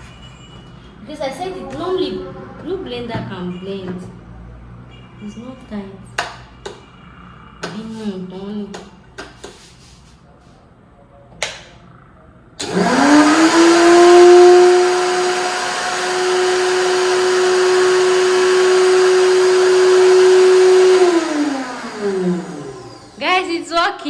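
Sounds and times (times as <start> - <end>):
blender motor whine: 12.6 - 23.2.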